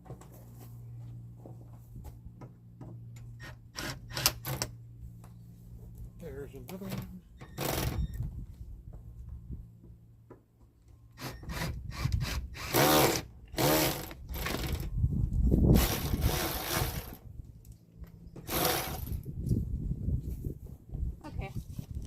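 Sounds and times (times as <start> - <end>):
electric drill drilling metal: 11.2 - 14.8, 15.8 - 17.2, 18.4 - 19.2.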